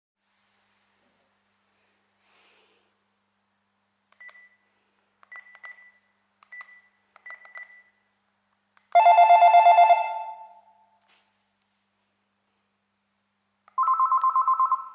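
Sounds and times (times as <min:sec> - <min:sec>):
warbling electronic ringtone: 0:09.0 - 0:10.6.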